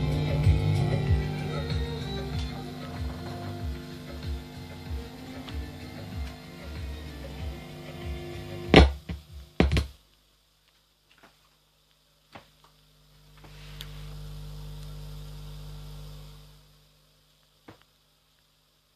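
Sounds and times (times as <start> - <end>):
burst of music: 0.0 - 9.6
subwoofer low hum: 0.0 - 10.0, 12.6 - 18.6.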